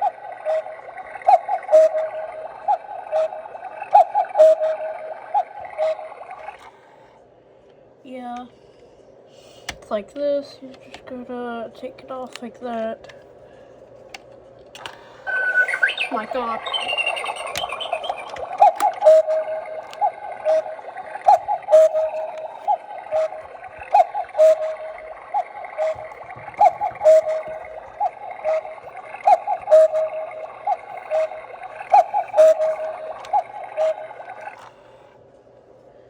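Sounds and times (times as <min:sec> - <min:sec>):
electronic cuckoo call: 0:00.0 - 0:06.7, 0:14.8 - 0:35.0
clock clicks: 0:15.8 - 0:22.5.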